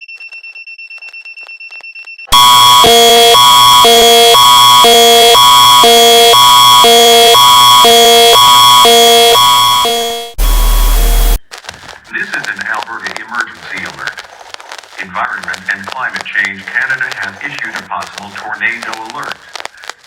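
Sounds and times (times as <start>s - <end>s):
emergency alert attention tone: 2.3s - 11.4s
faint rapid high beeping: 2.3s - 11.4s.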